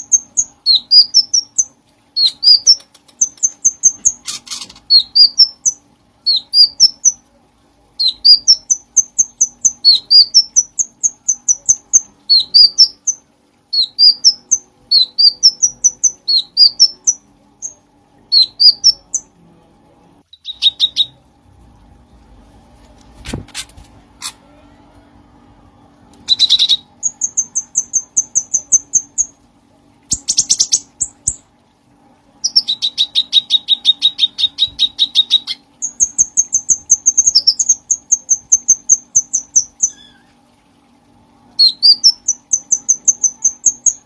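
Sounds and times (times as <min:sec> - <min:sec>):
bird whistling song: 0:00.0 - 0:07.2, 0:08.0 - 0:19.3, 0:20.3 - 0:21.2, 0:26.2 - 0:29.3, 0:30.1 - 0:31.4, 0:32.4 - 0:40.3, 0:41.6 - 0:44.0.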